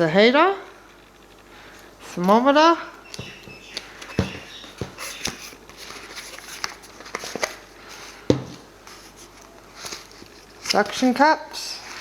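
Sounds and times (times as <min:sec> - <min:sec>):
packaging being handled: 0:03.1 - 0:11.2.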